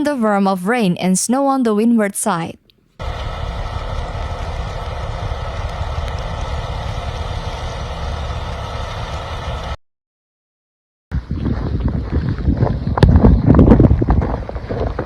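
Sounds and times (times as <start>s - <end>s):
vehicle engine running: 3.0s - 9.8s.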